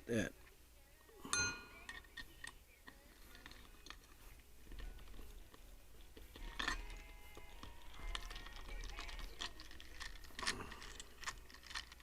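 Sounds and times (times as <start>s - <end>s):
metal parts clinking: 6.2s - 12.0s.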